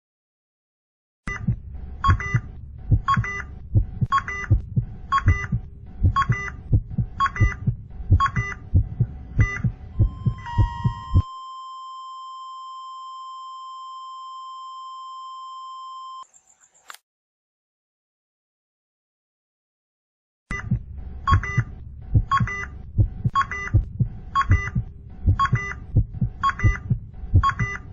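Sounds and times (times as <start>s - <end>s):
thudding heartbeats: 1.3s - 11.3s, 20.6s - 27.9s
heart monitor beeps: 1.3s - 16.3s, 20.5s - 27.9s
flatline tone: 9.3s - 16.2s.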